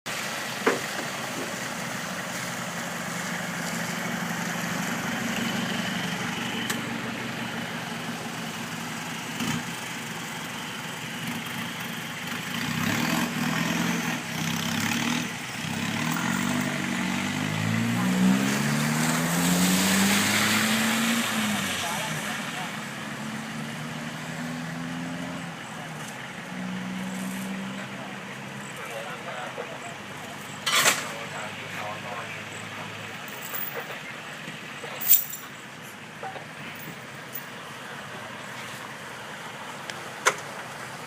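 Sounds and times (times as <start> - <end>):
vehicle engine revving: 11.1 - 34.0.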